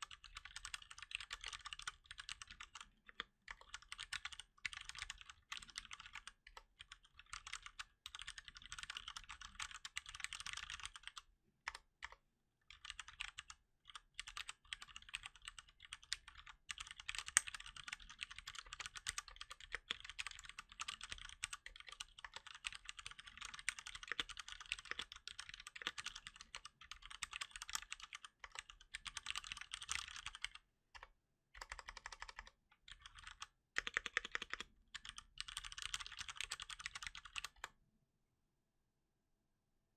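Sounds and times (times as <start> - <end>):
mechanical keyboard typing: 0.0 - 37.7.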